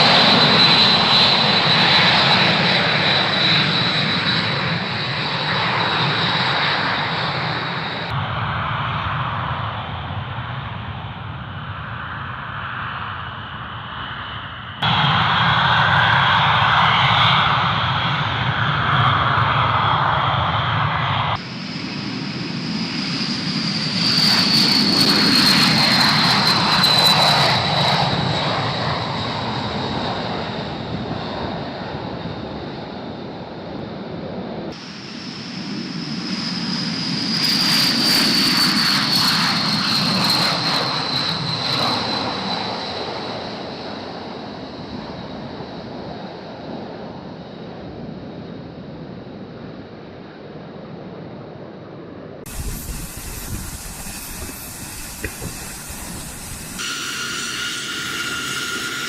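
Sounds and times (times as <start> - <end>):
jet bomber engines roaring: 0.0 - 59.0
high turbine whine: 52.5 - 59.0.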